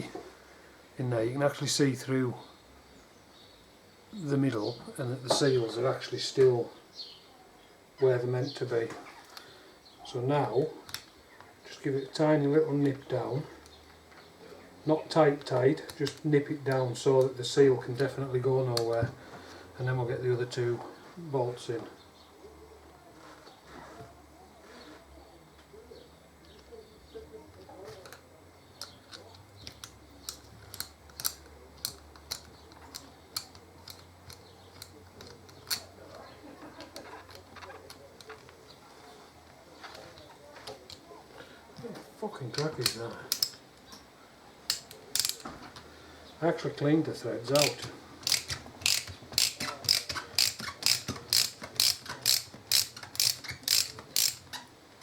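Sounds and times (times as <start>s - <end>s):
hand tool metallic clicks: 28.8s - 36.2s, 42.6s - 43.9s, 44.7s - 45.5s, 47.5s - 54.7s.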